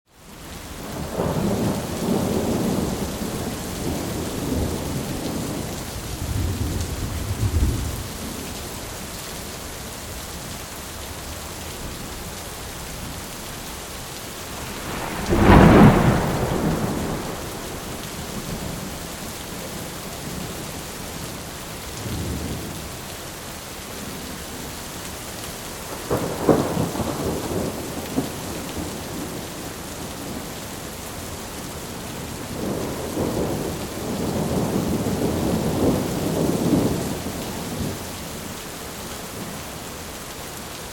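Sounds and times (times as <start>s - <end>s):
steady rain falling: 0.1s - 40.9s
rolling thunder: 0.9s - 8.2s, 14.2s - 20.6s.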